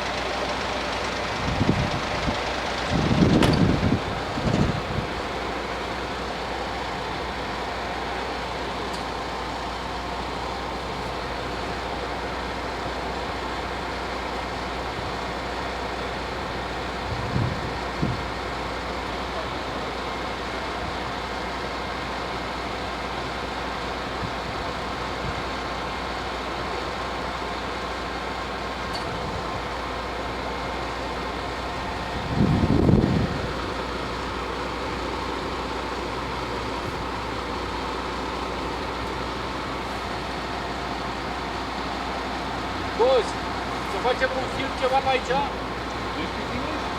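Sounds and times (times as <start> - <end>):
road traffic noise: 0.0 - 46.9.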